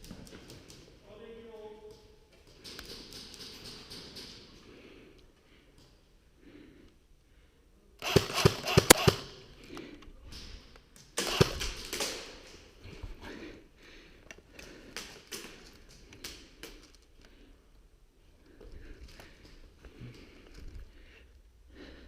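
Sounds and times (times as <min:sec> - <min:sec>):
airsoft guns firing: 0:08.0 - 0:09.5, 0:11.2 - 0:12.6.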